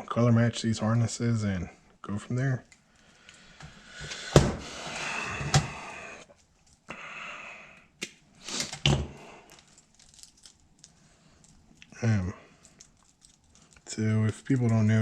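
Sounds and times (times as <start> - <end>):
wiring harnesses rustling: 6.2 - 6.9, 8.3 - 15.0.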